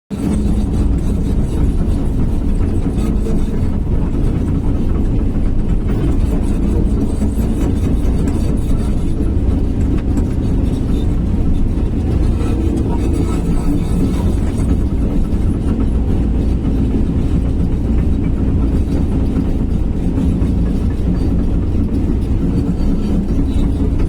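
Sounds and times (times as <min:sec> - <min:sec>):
excavator diesel engine droning: 0:00.2 - 0:24.0.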